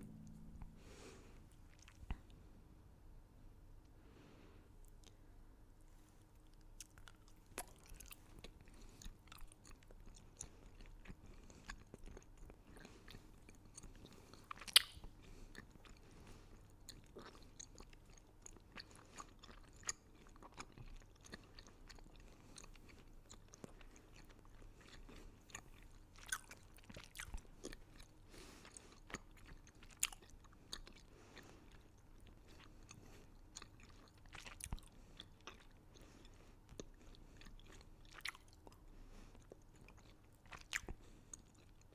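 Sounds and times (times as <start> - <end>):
wet mouth sounds: 6.8 - 16.0.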